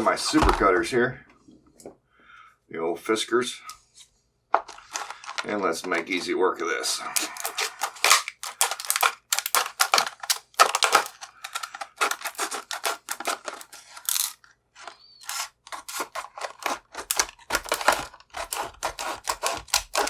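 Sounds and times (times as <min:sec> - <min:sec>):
cutters crunching through metal: 0:07.1 - 0:14.4, 0:15.1 - 0:20.0.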